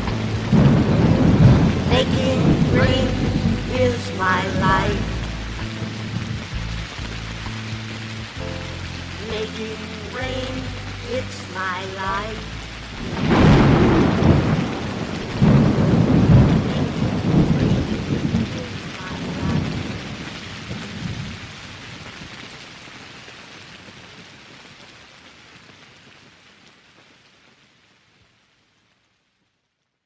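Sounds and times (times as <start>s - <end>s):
thunder rumbling: 0.0s - 21.4s
steady rain: 0.0s - 30.0s.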